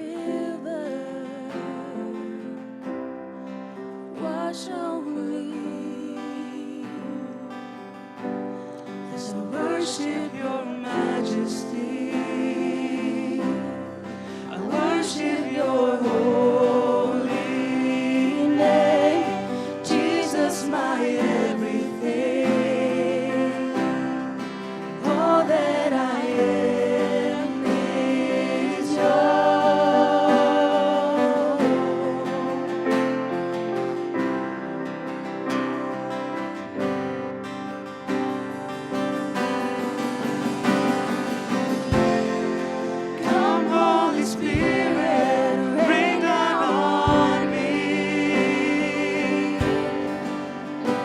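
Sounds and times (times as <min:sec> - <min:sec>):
person singing worship melody: 0:00.0 - 0:02.7, 0:03.4 - 0:34.4, 0:38.1 - 0:51.0
acoustic guitar: 0:00.0 - 0:51.0.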